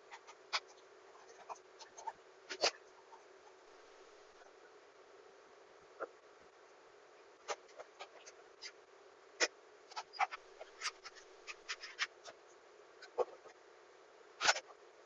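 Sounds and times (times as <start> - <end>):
light clicks and scratches: 0.0 - 4.6, 7.4 - 8.8, 9.4 - 13.6
faint steady hum: 0.0 - 15.0.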